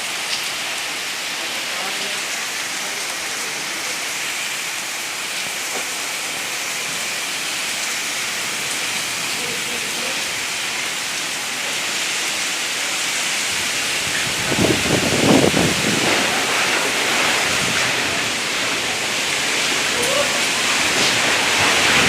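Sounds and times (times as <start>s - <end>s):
windstorm hiss: 10.2s - 22.0s.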